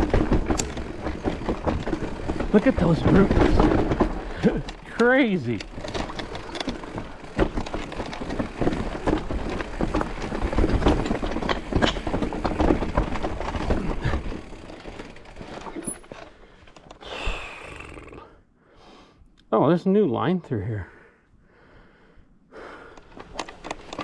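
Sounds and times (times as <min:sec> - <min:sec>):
tyres rumbling over roots and dirt: 0:00.0 - 0:16.7
bike knocking and rattling: 0:00.0 - 0:17.4, 0:22.7 - 0:24.0.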